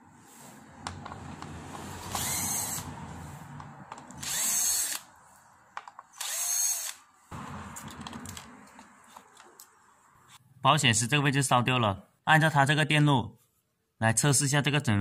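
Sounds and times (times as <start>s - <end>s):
power screwdriver whirring: 1.7s - 3.0s, 4.0s - 5.1s, 6.1s - 7.1s.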